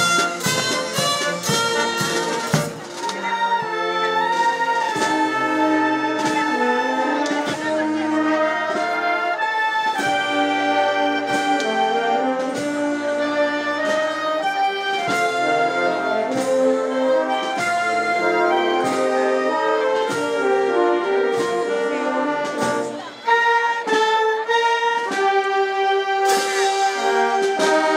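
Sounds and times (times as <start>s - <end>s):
brass instruments playing melody: 0.0s - 27.9s.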